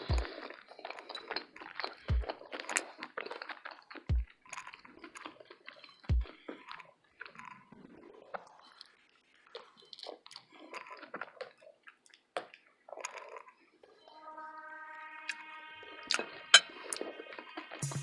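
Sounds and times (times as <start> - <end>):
close-miked chewing: 0.0 - 14.1.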